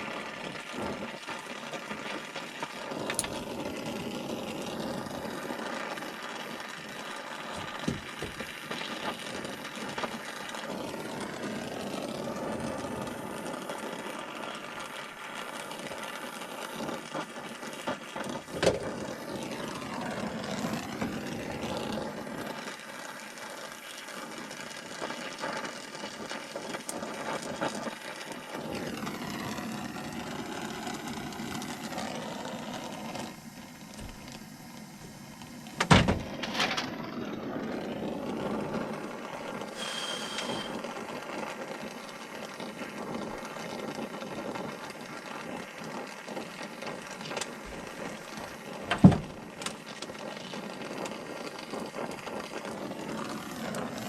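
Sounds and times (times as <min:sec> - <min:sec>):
steady mechanical drone: 0:02.3 - 0:15.9, 0:18.4 - 0:22.8, 0:28.3 - 0:41.1, 0:52.7 - 0:54.0.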